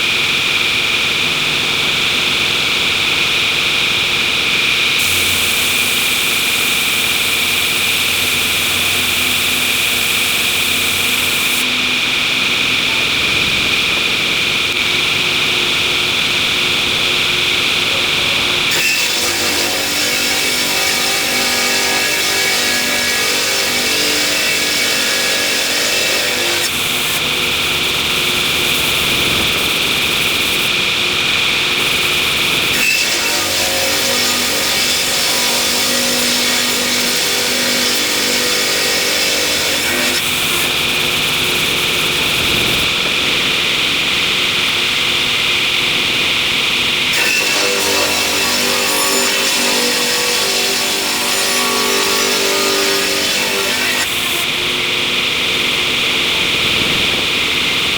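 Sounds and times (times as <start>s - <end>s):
high-pitched hissing whine: 5.0s - 18.7s, 26.7s - 32.7s, 40.3s - 46.2s.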